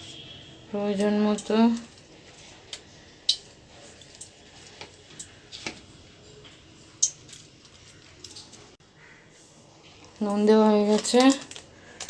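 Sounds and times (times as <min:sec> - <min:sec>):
light clicks and taps in kitchen: 0:02.7 - 0:05.8.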